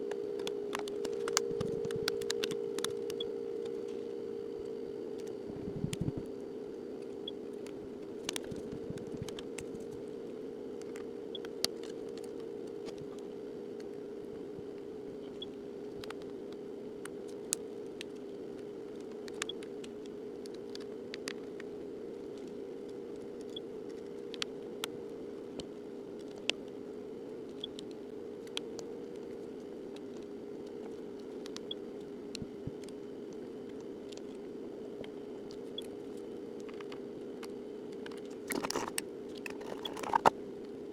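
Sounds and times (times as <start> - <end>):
steady low hum: 0.0 - 40.9
small parts clicking and snapping: 38.0 - 40.4.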